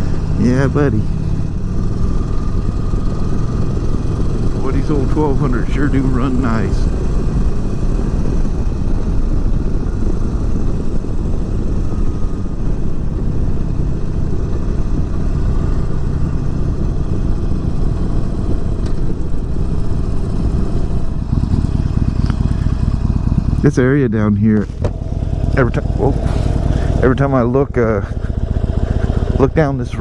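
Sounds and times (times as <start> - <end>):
rushing wind: 0.0 - 23.9, 24.5 - 30.0
motorcycle engine running: 0.0 - 30.0.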